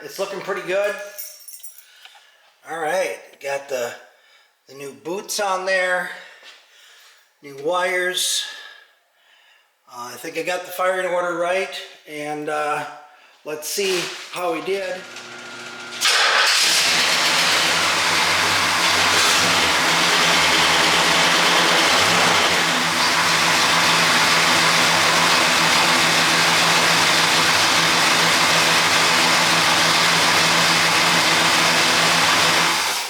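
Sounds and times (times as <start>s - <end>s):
person talking: 0.0s - 1.2s, 2.6s - 4.0s, 9.9s - 15.2s
car engine idling: 16.5s - 29.6s.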